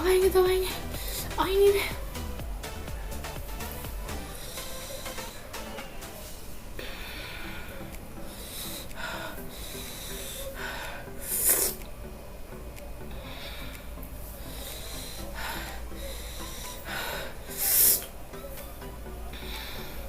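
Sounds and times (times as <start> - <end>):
quiet background music: 0.0 - 20.0
woman hissing breaths and sniffs: 11.2 - 11.8, 16.0 - 18.1.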